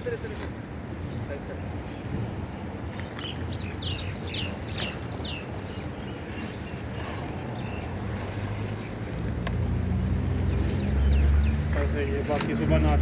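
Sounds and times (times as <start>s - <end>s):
wind rumbling on microphone: 0.0s - 13.0s
small bird chirping: 3.1s - 6.8s.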